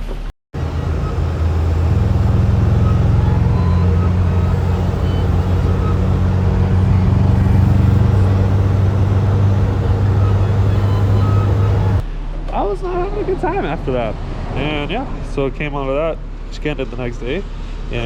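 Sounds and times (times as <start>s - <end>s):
car engine running rough: 0.5s - 12.0s.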